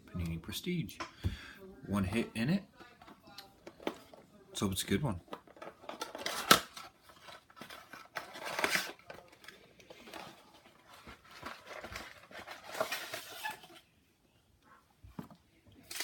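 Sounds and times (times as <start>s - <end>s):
packaging rustling and crinkling: 5.3s - 13.9s.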